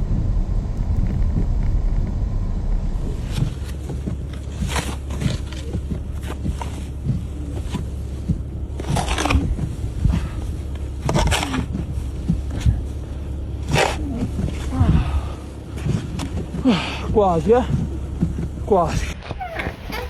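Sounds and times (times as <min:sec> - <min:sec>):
snow crunching: 0:00.0 - 0:15.3, 0:19.4 - 0:20.0
steady low rumble: 0:00.0 - 0:20.0.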